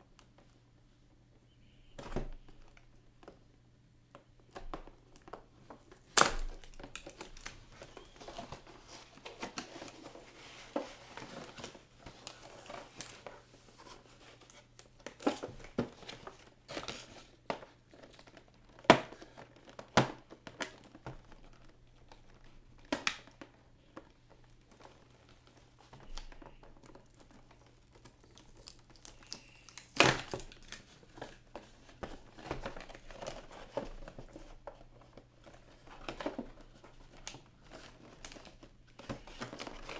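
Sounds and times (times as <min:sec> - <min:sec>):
plastic and cardboard crinkling: 0:04.2 - 0:39.9
packaging clicks and snaps: 0:04.6 - 0:09.9, 0:26.0 - 0:34.4.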